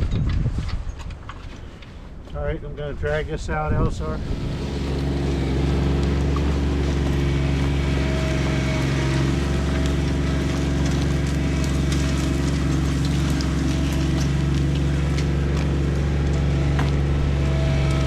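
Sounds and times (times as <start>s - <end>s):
diesel tractor engine running: 3.3s - 18.0s.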